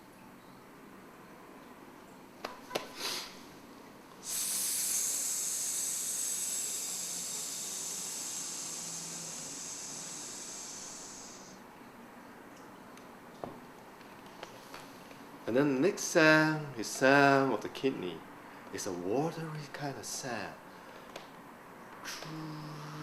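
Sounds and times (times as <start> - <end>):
person exhaling hissing sss: 3.0 - 3.4, 4.2 - 11.6, 22.0 - 23.0
short breathy noise: 4.2 - 11.6.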